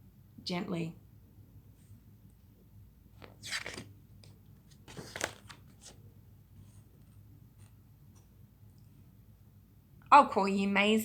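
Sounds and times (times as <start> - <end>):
book page turning: 3.1 - 7.8.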